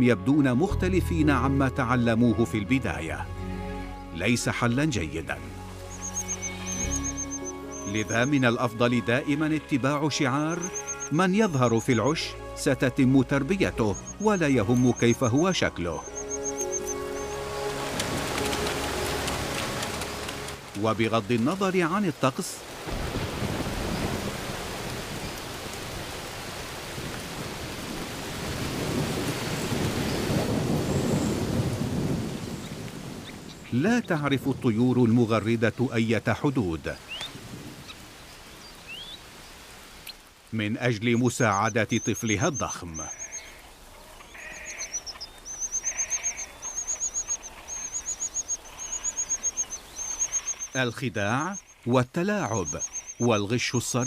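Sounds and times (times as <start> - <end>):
bird chick begging calls: 10.5 - 11.2, 13.8 - 17.4, 41.6 - 51.9, 52.5 - 53.4
steady rain: 16.4 - 54.0
low rumble of thunder: 22.9 - 26.1, 26.9 - 33.7.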